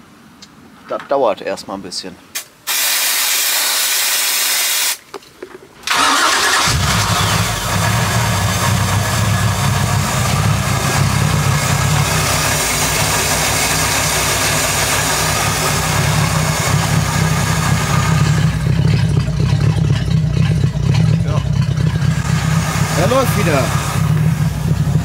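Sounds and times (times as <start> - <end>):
boat engine idling: 5.9 - 25.0.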